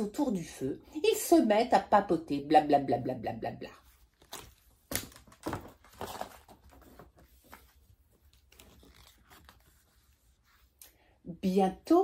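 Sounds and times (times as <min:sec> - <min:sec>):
rustling and handling noises: 0:03.8 - 0:11.2.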